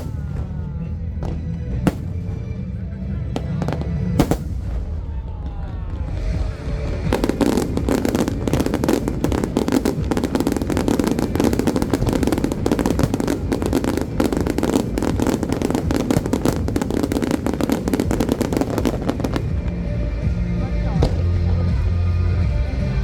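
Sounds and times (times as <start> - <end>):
fireworks crackling: 0.0 - 22.6.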